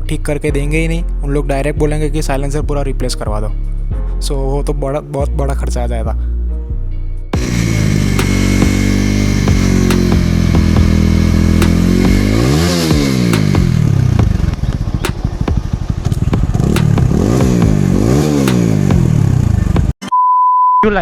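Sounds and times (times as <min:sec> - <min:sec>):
motorcycle engine revving: 0:07.4 - 0:20.0
sharp ticks: 0:09.5 - 0:11.0, 0:11.6 - 0:17.8, 0:18.5 - 0:18.7.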